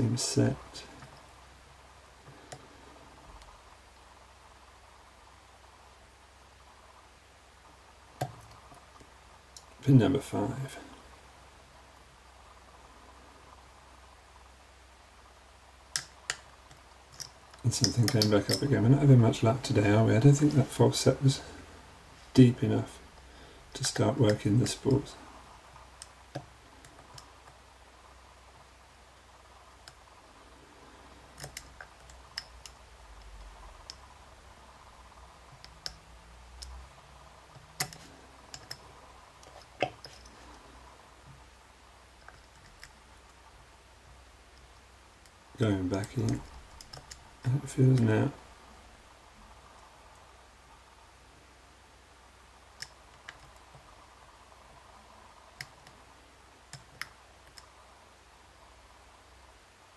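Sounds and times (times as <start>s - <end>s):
lock pick metal clicks: 31.4s - 33.3s.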